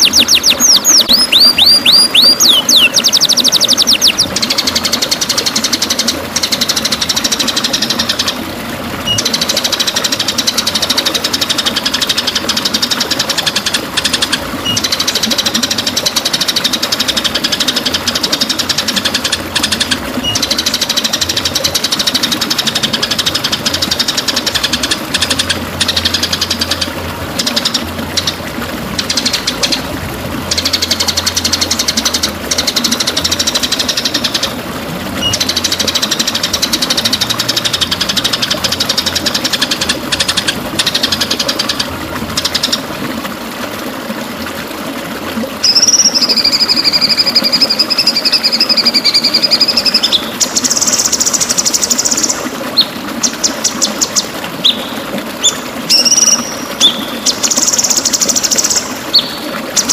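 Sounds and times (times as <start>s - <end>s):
songbird rapid rattling trill: 0.0s - 8.3s, 35.2s - 41.8s, 45.6s - 59.9s.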